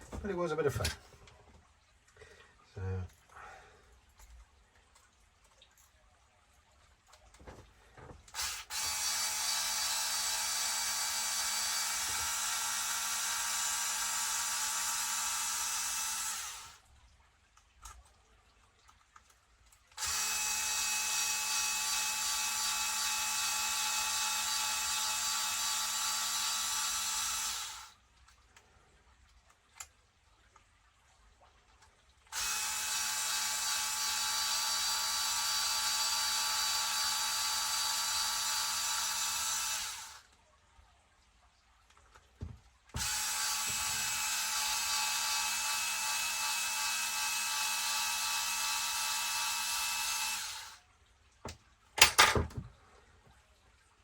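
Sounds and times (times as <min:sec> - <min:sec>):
small electric power tool running: 0:08.3 - 0:16.8, 0:20.0 - 0:27.9, 0:32.4 - 0:40.3, 0:43.0 - 0:50.8.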